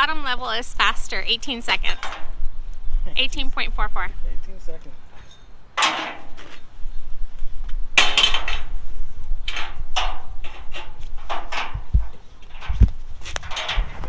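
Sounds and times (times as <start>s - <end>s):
strap hardware clanking and rattling: 1.2s - 2.5s, 5.0s - 7.0s, 7.9s - 14.0s.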